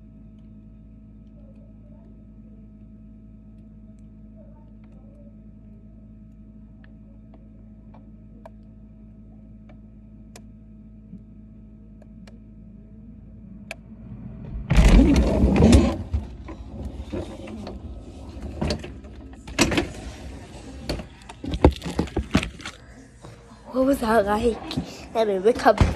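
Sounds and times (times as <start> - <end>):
freezer humming: 9.2 - 25.9
rustling and knocking: 14.5 - 22.9.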